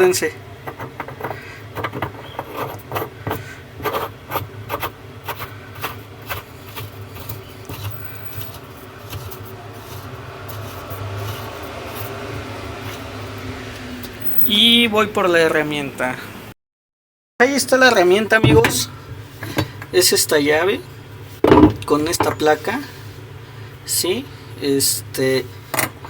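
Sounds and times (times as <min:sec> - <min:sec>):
tub nut knocking and clicking: 0:00.6 - 0:03.4
nut scraping on shaft: 0:00.6 - 0:13.5.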